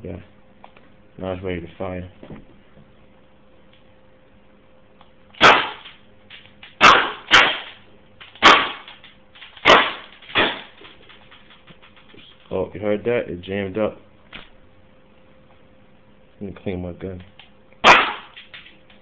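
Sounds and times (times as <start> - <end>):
airsoft pistol firing: 5.4 - 6.0, 6.7 - 9.0, 9.6 - 10.7, 17.8 - 18.7.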